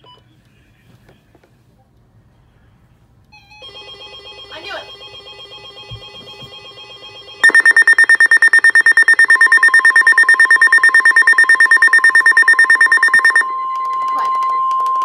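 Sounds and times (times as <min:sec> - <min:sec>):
rapid high-pitched beeping: 0:07.4 - 0:13.4
steady warning tone: 0:07.4 - 0:13.5.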